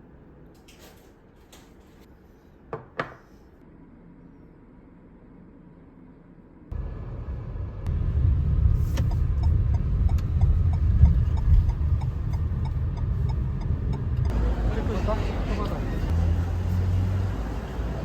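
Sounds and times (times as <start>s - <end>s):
moving car rumble: 6.7s - 18.0s.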